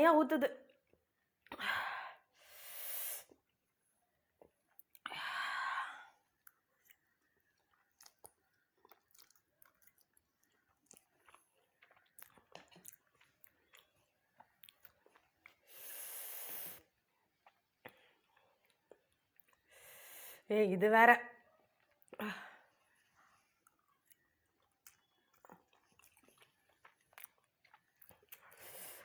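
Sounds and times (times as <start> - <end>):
person chewing noodles: 6.3 - 19.8, 22.9 - 29.0.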